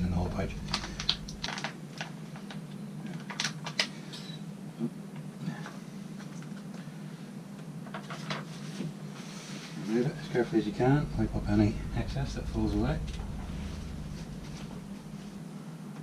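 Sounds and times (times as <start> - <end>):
steady low hum: 0.0 - 2.2, 9.8 - 15.6.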